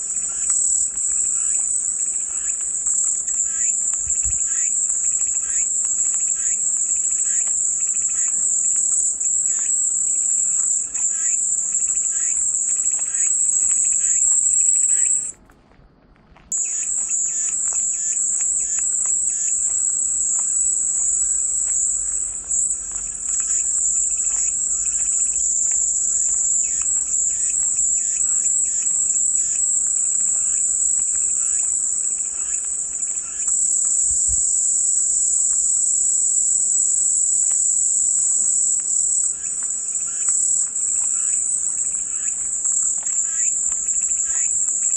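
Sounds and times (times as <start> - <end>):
cicadas droning: 0.0 - 15.4, 16.4 - 44.9.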